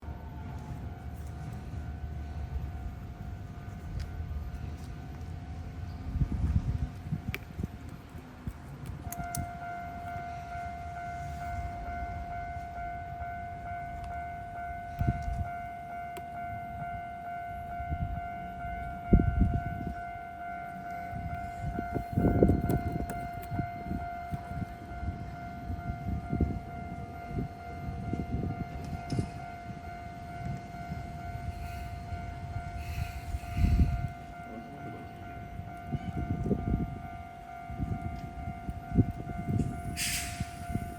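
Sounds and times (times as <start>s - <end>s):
level crossing warning alarm: 0.0s - 40.9s.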